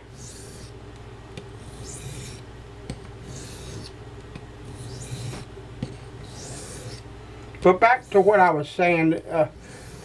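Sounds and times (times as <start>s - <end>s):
knife scraping sharpening stone: 1.6s - 2.4s, 4.7s - 5.4s.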